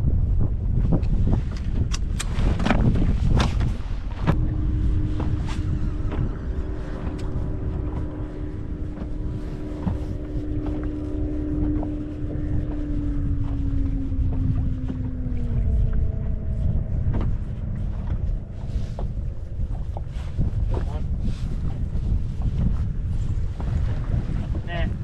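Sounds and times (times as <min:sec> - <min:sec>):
wind on microphone: 0:00.0 - 0:25.0
electric motor whining: 0:04.3 - 0:20.0.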